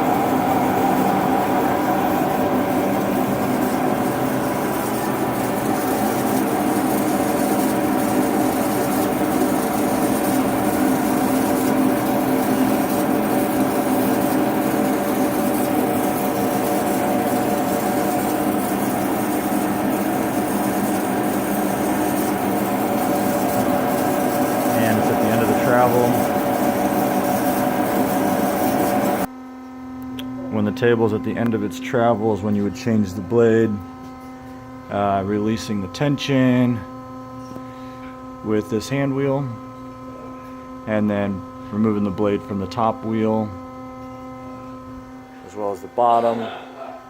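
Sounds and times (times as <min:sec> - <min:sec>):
bandsaw machine drone: 0:00.0 - 0:29.3.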